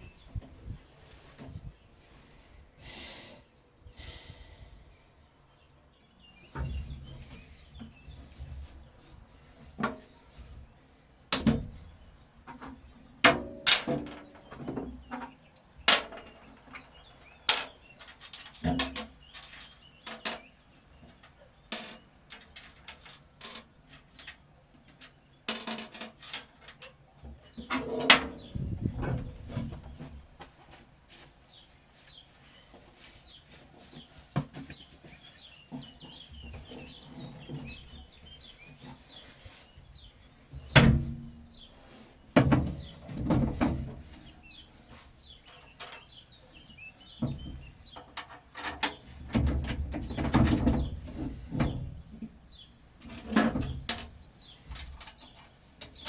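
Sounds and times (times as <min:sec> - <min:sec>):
clicks and knocks of hand work: 0:12.5 - 0:20.5.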